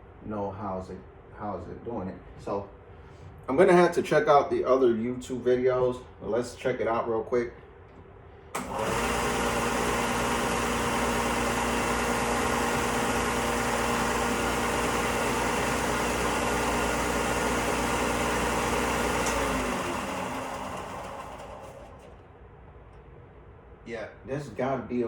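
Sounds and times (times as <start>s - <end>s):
belt sander running: 8.6s - 22.2s.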